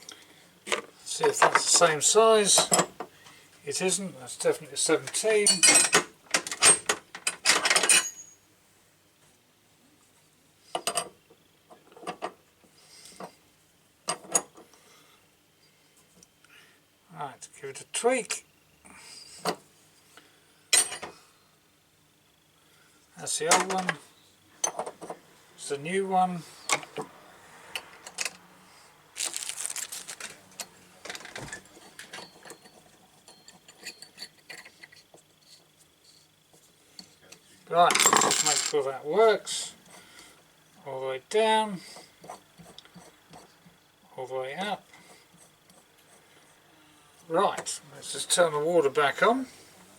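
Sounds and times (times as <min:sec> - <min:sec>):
metal tools clinking: 0:02.5 - 0:02.9, 0:05.1 - 0:08.4, 0:29.2 - 0:34.9, 0:37.9 - 0:38.9
metal parts clicking and rattling: 0:05.1 - 0:08.3, 0:29.2 - 0:35.6, 0:37.9 - 0:38.8.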